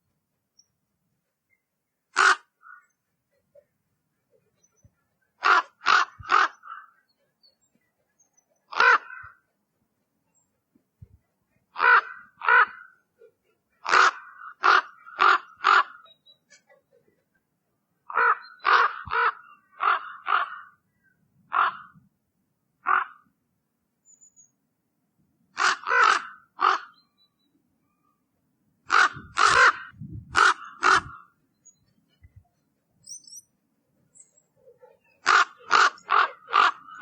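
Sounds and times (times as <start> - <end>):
raven calling: 2.1 - 3.0, 5.3 - 7.0, 8.7 - 9.4, 11.7 - 13.0, 13.7 - 16.7, 18.1 - 20.8, 21.5 - 22.0, 22.8 - 23.2, 25.6 - 27.1, 28.9 - 31.4, 34.6 - 37.0.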